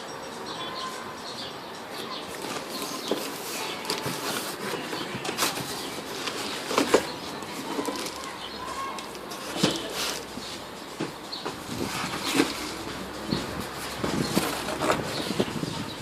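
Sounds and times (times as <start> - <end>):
packaging rustling: 2.2 - 10.6, 11.5 - 15.6.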